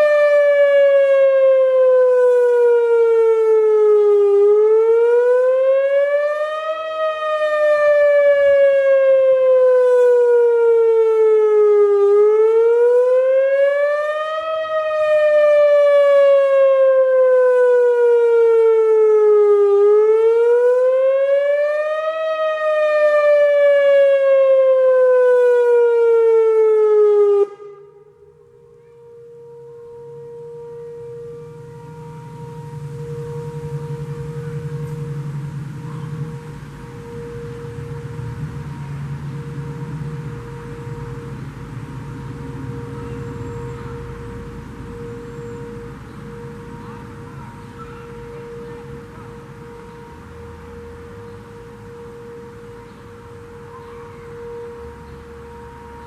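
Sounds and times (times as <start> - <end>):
warning siren wailing: 0.0 - 56.0
faint steady tone: 27.5 - 56.0.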